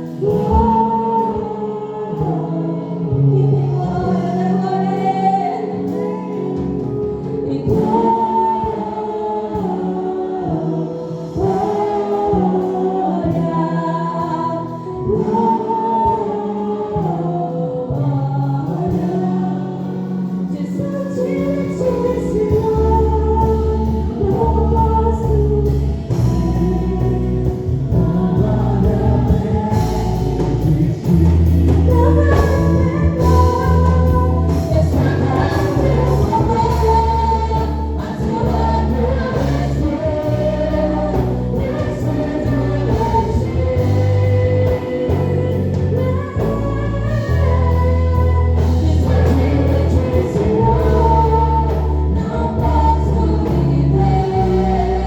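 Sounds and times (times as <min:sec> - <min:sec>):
group singing gospel song: 0:00.0 - 0:55.0
instrumental backing: 0:00.0 - 0:55.0
strong low bass: 0:21.5 - 0:55.0.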